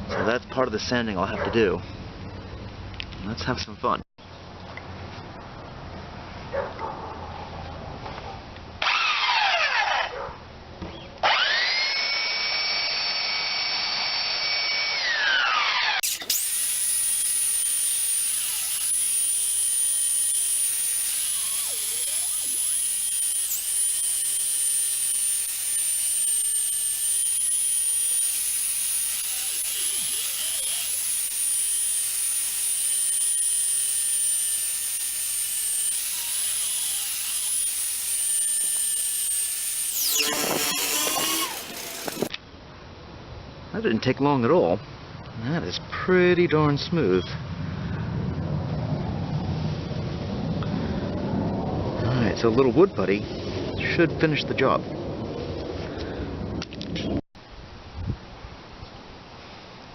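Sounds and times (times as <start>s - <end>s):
power sander whining: 11.2s - 42.4s.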